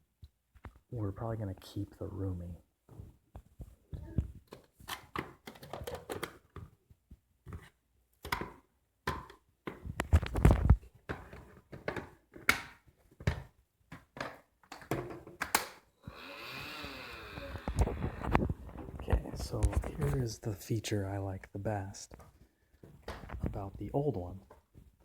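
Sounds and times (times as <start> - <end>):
steady vacuum noise: 16.1 - 19.6.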